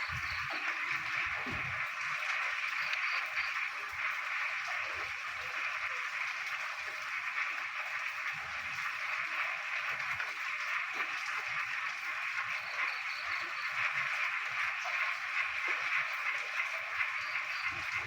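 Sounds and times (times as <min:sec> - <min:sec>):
frogs calling: 0:00.0 - 0:01.6, 0:02.4 - 0:03.8, 0:12.4 - 0:14.3, 0:14.9 - 0:18.0
rain falling: 0:00.0 - 0:18.0.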